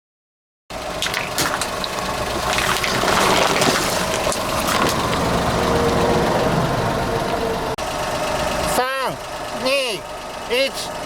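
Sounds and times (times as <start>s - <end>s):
car engine running: 0.7s - 11.0s
tyre crushing water balloons: 0.9s - 5.4s
water splashing: 0.9s - 5.7s.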